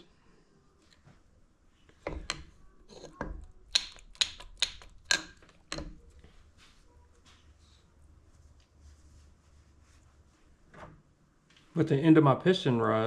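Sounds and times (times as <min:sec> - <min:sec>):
metal parts clicking and knocking: 0:02.0 - 0:06.2.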